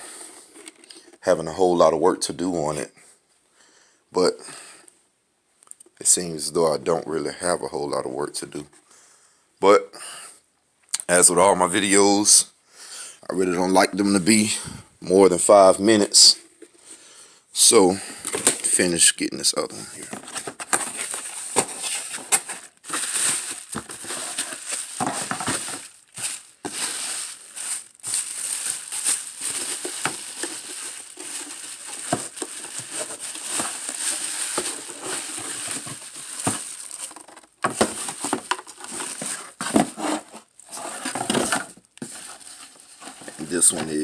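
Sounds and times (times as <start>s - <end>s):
packaging crinkling and rustling: 18.2s - 19.1s, 20.0s - 44.0s.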